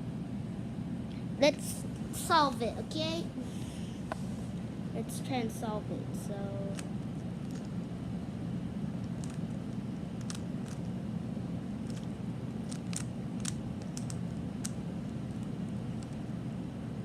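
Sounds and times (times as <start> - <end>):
low background hum: 0.0 - 17.0
puzzle cube clicking: 6.7 - 7.7, 9.0 - 9.6, 10.2 - 10.9, 11.8 - 16.2.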